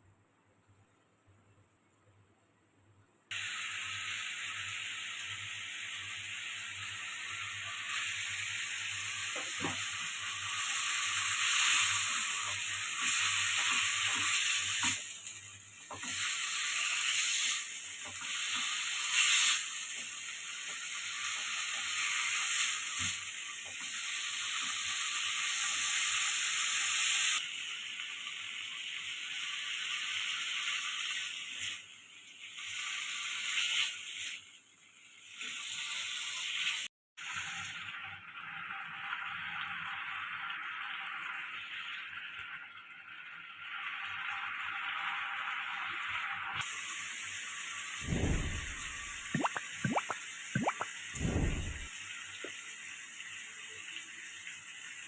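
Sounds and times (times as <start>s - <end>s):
food sizzling in a frying pan: 3.3s - 55.0s.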